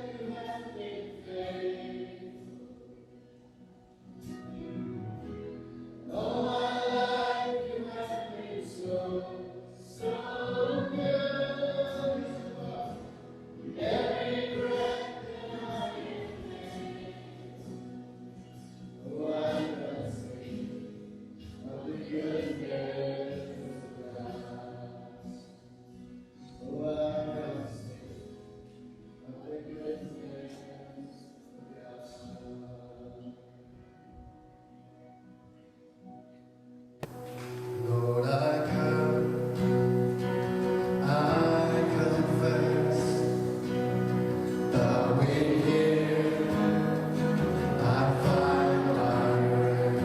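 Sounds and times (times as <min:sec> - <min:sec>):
group singing worship song: 0:00.0 - 0:03.6, 0:05.2 - 0:25.6, 0:29.2 - 0:33.4, 0:37.0 - 0:50.0
sustained musical accompaniment: 0:37.0 - 0:50.0.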